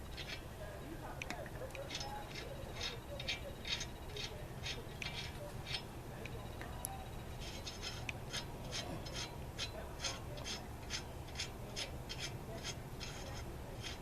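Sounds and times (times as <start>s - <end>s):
lug wrench metallic rasp: 0.0s - 0.4s, 1.8s - 5.9s, 7.4s - 14.0s.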